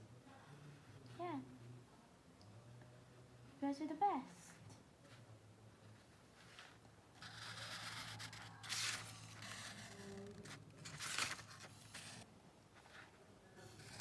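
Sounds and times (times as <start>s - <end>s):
marker scratching on paper: 6.4s - 12.2s, 13.6s - 14.0s.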